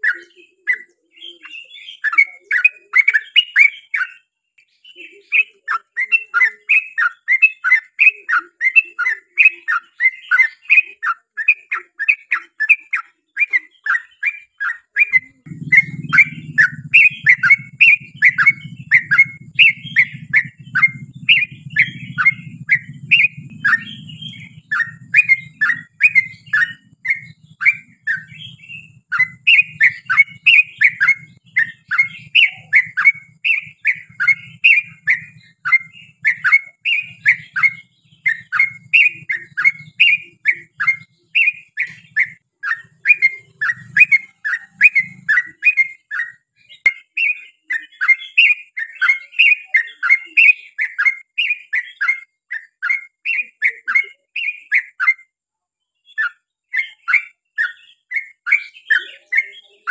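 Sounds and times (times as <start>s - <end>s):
bird chattering song: 0.0s - 55.3s, 55.9s - 59.9s
low steady hum: 15.4s - 36.2s.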